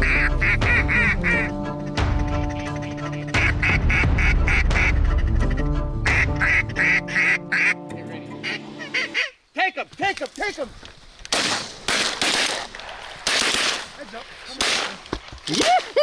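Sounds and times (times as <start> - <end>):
background music: 0.0 - 9.3
duck quacks: 0.0 - 9.4.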